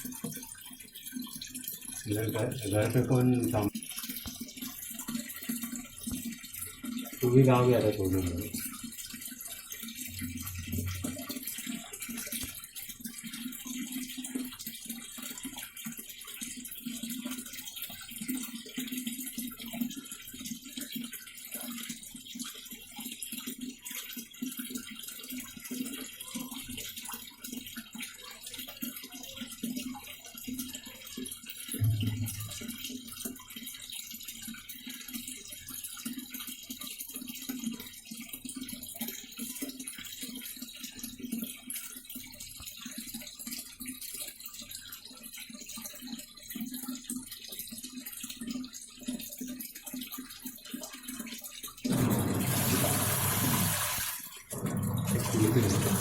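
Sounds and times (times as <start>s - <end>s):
water pouring into washing machine: 0.0s - 56.0s
low hum: 31.8s - 32.7s.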